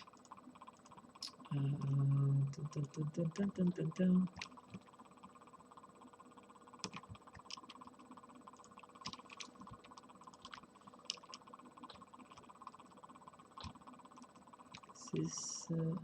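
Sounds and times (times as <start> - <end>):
computer mouse and keyboard clicks: 0.0 - 2.0, 6.8 - 13.0
steady low hum: 0.0 - 16.0.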